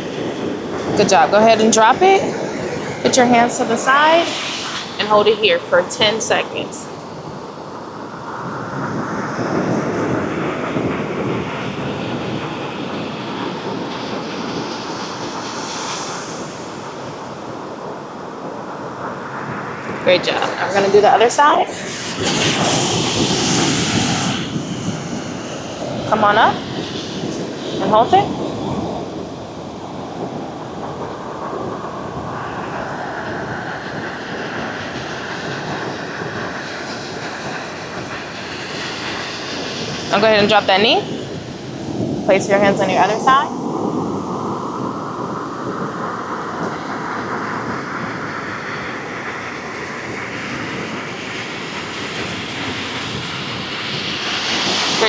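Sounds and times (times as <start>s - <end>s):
ocean surf: 0.0s - 55.0s
wind on microphone: 0.0s - 55.0s.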